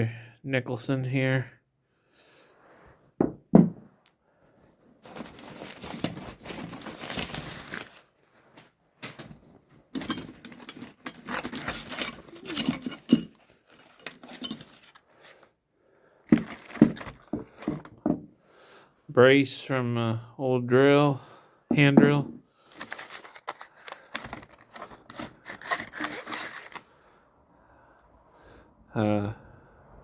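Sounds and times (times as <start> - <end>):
tools rustling and clinking: 5.0 - 15.5, 16.3 - 18.3, 21.7 - 26.8
metal tools knocking: 10.0 - 15.0, 16.8 - 18.3.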